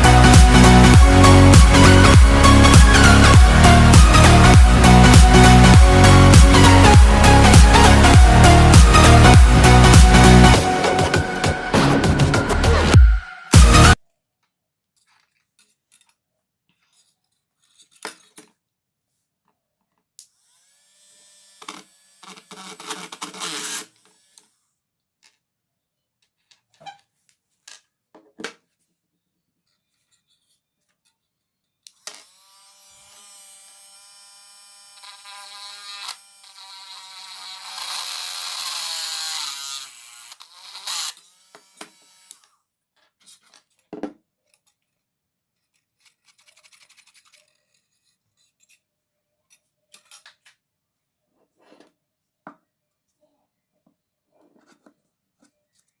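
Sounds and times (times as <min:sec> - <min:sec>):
small motor whirring: 0:20.3 - 0:24.6, 0:32.0 - 0:42.6.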